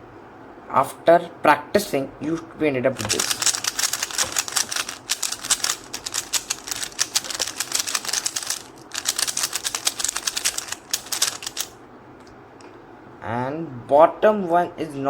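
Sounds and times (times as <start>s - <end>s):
speed cube plastic clicks: 3.0s - 11.7s.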